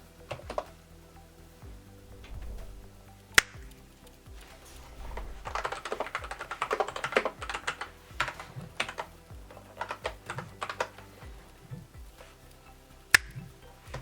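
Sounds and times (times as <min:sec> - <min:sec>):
mechanical keyboard typing: 0:05.2 - 0:09.1, 0:09.8 - 0:11.0.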